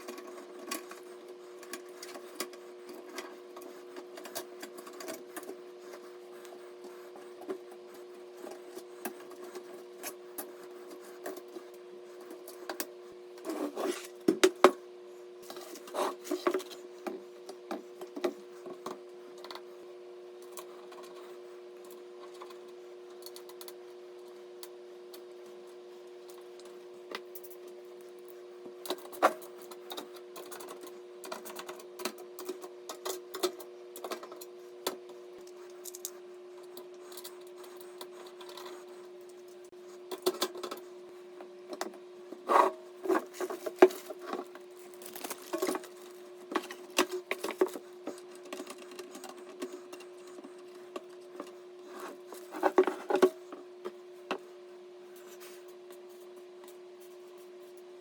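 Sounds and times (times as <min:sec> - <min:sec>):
hands handling computer parts: 0:41.7 - 0:49.7.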